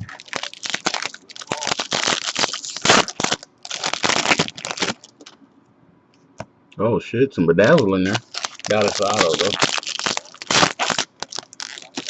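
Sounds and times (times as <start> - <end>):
foil wrappers crinkling and tearing: 0.0 - 5.4, 7.6 - 12.0.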